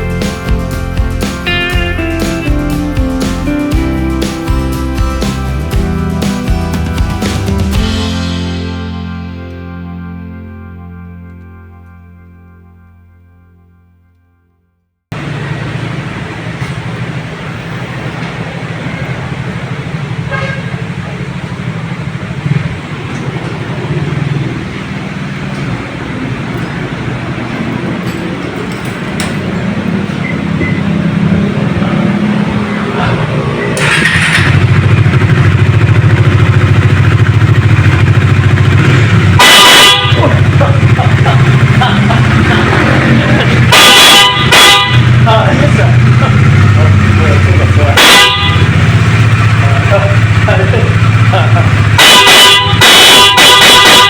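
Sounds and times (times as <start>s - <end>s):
background music: 0.0s - 14.4s
car horn honk: 20.2s - 20.9s, 38.8s - 41.0s, 43.4s - 45.3s, 47.8s - 49.3s, 51.7s - 54.0s
car engine running: 20.9s - 53.5s.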